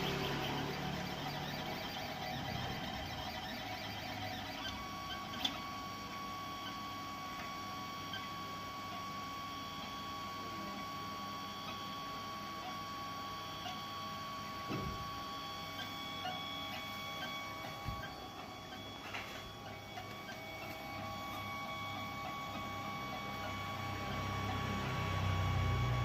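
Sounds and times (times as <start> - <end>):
stepper motors whining: 0.0 - 26.0.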